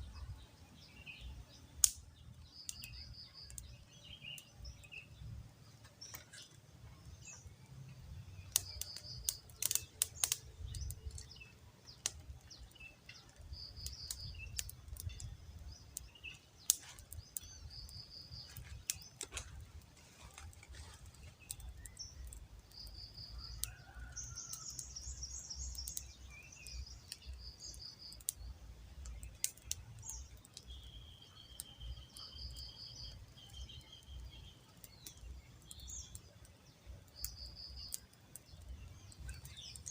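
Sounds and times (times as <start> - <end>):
small birds chirping trills: 0.0 - 39.9
sharp clicks: 1.8 - 2.0, 8.5 - 12.2.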